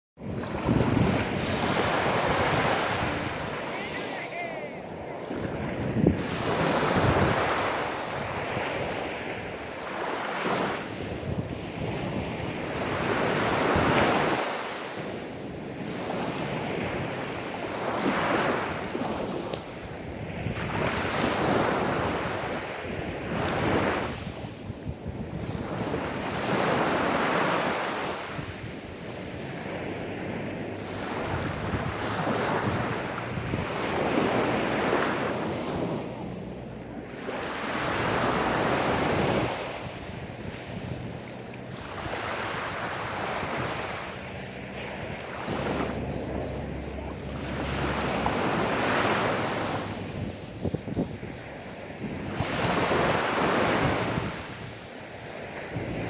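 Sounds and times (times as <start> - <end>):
sea waves washing onto beach: 0.2 - 56.0.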